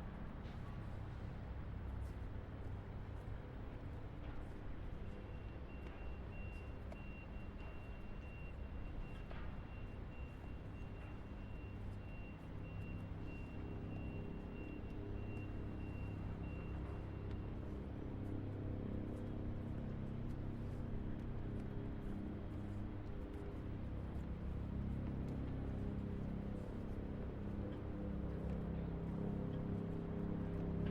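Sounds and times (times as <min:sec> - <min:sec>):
low engine hum: 0:13.2 - 0:30.9.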